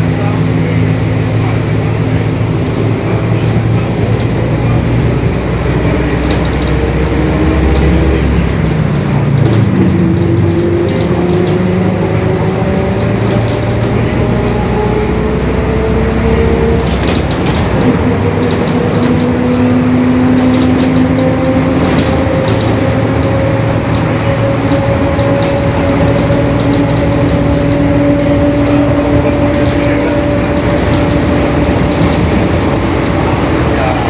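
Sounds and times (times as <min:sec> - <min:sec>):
bus drivetrain whine rising: 0:00.0 - 0:34.0
light rattling clicks: 0:05.8 - 0:15.0, 0:16.2 - 0:34.0.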